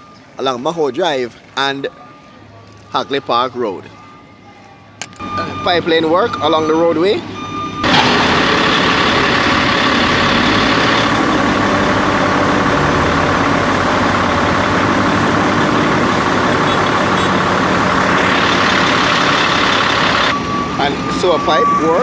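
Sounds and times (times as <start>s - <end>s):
heavy diesel engine running: 5.2s - 22.0s.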